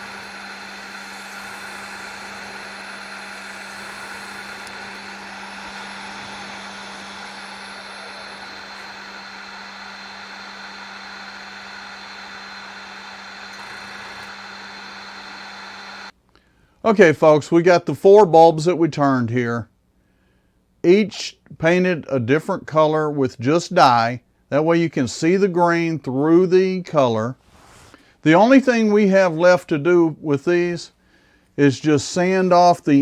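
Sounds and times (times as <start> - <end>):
wood lathe motor hum: 0.0 - 16.1.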